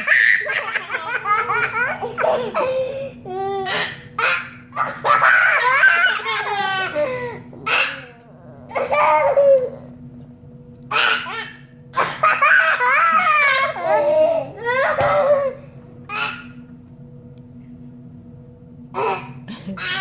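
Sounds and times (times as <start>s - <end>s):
young children laughing: 0.0s - 9.9s, 12.0s - 15.7s, 19.0s - 20.0s.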